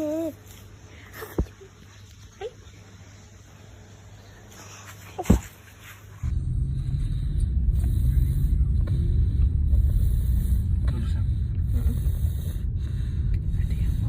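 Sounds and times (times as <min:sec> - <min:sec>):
low rumble: 0:06.2 - 0:14.0.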